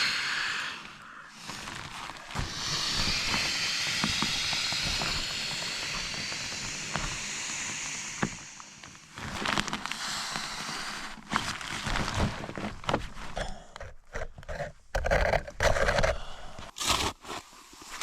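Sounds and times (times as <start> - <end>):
shovel scraping packed snow: 16.8 - 18.0.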